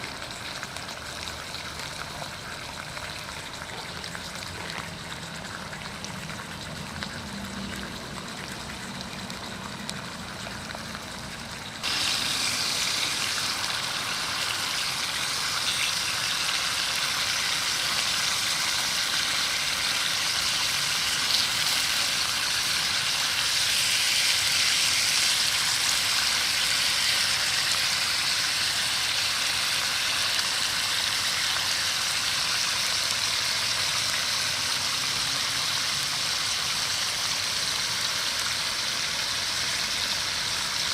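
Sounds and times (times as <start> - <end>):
meat sizzling on a grill pan: 11.7 - 40.9.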